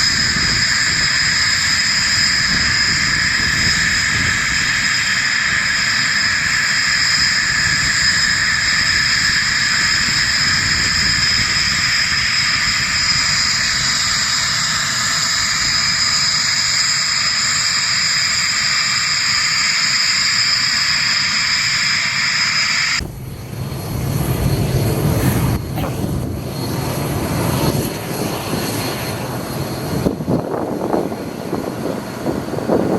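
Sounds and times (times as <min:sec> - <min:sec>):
high mechanical whine: 0:00.0 - 0:32.9
low rough rumble: 0:23.0 - 0:27.8.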